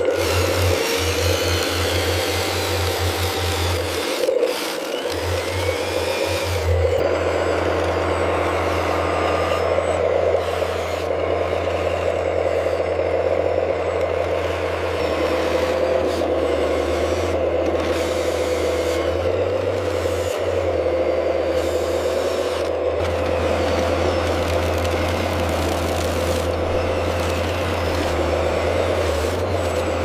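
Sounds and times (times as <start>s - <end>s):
toy trucks humming: 0.0s - 30.0s.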